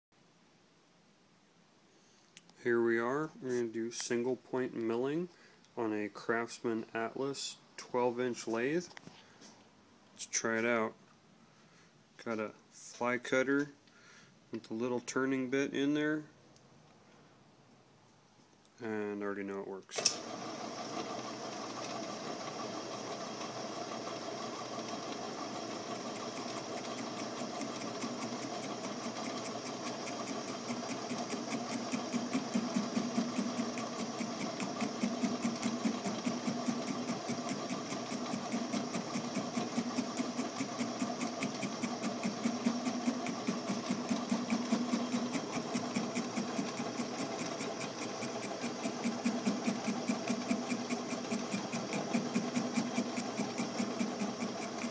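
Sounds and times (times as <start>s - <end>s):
lathe machine hum: 20.2s - 54.9s
fast tapping of cutter on metal: 26.2s - 54.9s.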